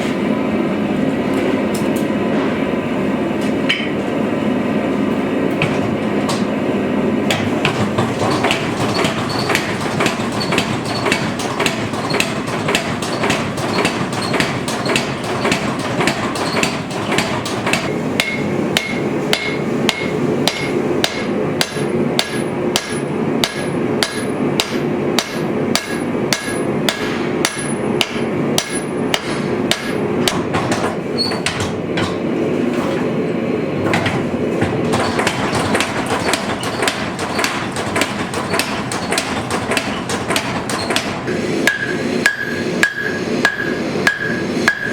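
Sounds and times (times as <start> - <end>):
hammer striking steel on anvil: 9.5 - 32.2, 35.2 - 44.9.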